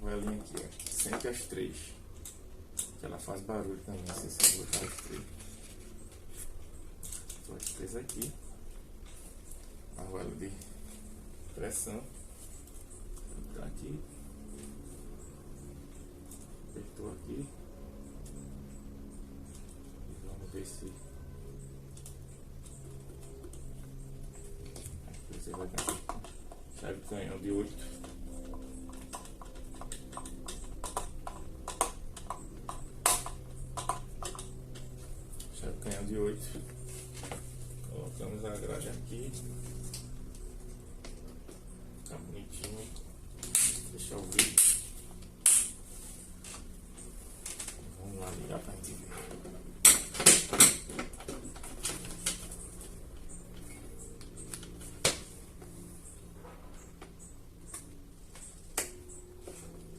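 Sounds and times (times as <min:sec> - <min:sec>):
faint motor hum: 0:00.0 - 0:59.9
fan parts knocking: 0:25.1 - 0:35.0.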